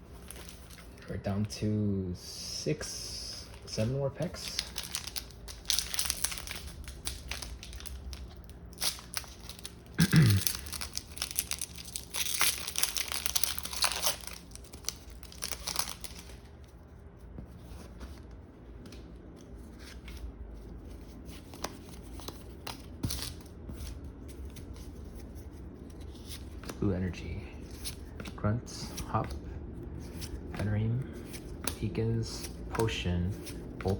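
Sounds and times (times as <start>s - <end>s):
cards being handled: 0.1s - 1.1s, 2.8s - 33.9s
foil wrapper tearing and crinkling: 4.5s - 16.4s.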